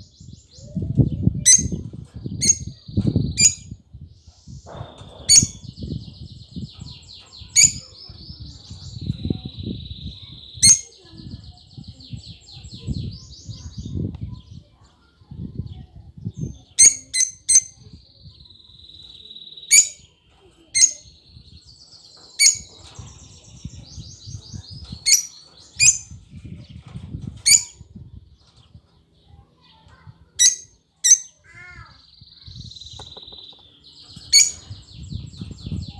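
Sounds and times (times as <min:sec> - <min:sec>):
lovebirds shrill chirps: 0:00.1 - 0:14.6, 0:15.7 - 0:35.9
buzzy trilled chatter: 0:16.8 - 0:17.9, 0:22.4 - 0:26.4, 0:30.4 - 0:31.4.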